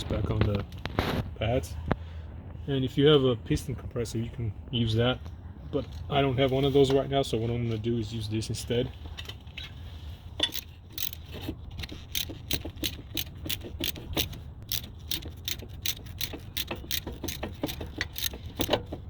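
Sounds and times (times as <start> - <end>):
hand tool clicking: 10.4 - 19.0.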